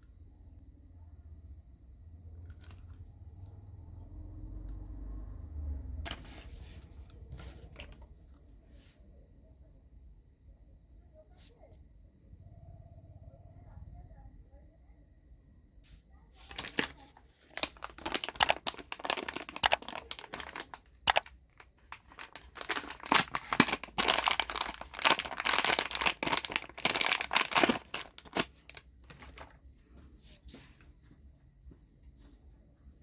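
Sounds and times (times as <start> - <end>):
crinkling and rustling: 6.0 - 8.8, 16.4 - 31.2.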